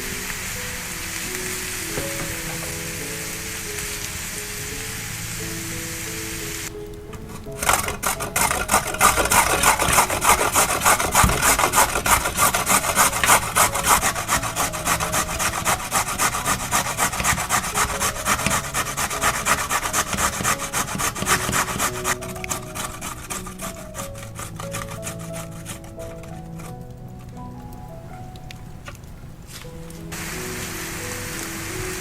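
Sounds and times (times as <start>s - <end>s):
food rasping on a grater: 7.5s - 26.8s.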